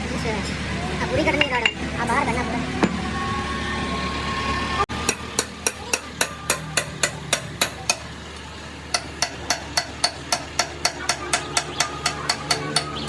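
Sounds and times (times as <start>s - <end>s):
hammer ringing on metal: 5.1s - 8.1s, 8.9s - 13.0s.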